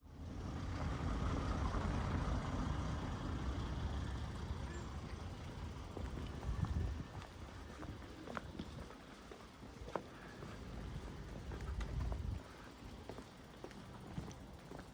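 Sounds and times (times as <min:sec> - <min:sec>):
large vehicle engine running: 0:00.2 - 0:08.8.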